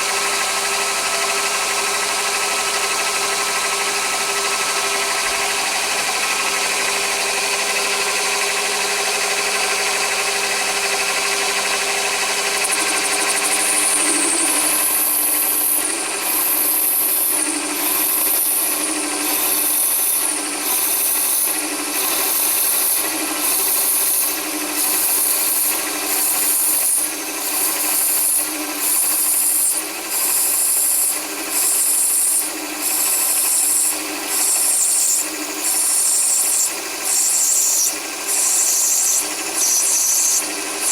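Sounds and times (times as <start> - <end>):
lathe motor hum: 0.0 - 40.9
high-pitched cutting squeal: 12.6 - 40.9.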